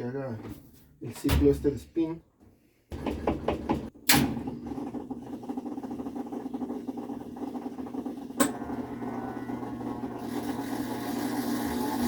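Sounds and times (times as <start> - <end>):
washing machine motor hum: 2.9 - 12.0.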